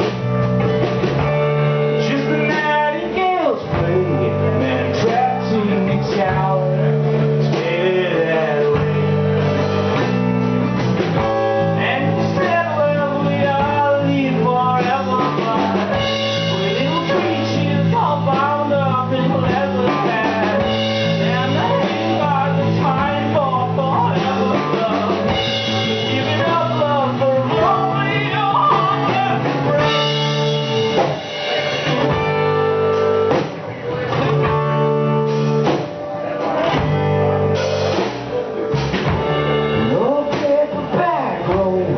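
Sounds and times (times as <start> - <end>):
rock band playing live: 0.0 - 41.9
person singing: 1.9 - 9.5, 11.6 - 32.2, 39.6 - 41.9.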